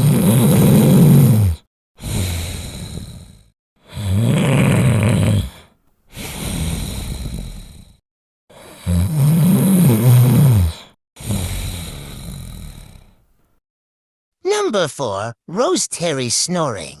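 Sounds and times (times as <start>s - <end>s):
person snoring: 0.0s - 13.2s.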